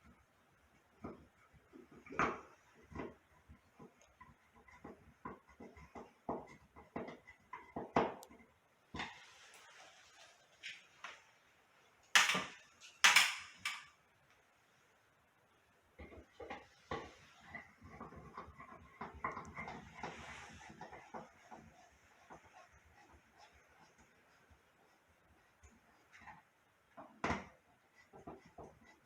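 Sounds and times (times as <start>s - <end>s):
light clicks and knocks: 12.2s - 14.0s, 16.0s - 22.7s.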